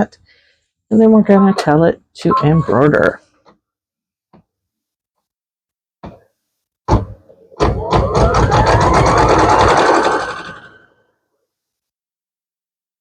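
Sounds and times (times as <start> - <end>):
embroidery machine stitching: 7.6 - 10.9.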